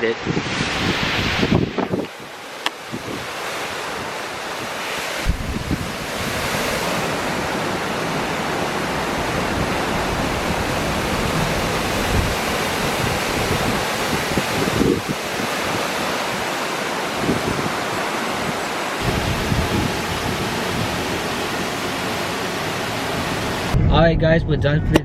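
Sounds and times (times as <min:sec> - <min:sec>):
waterfall rushing: 0:00.0 - 0:23.8
wind buffeting microphone: 0:00.1 - 0:25.0.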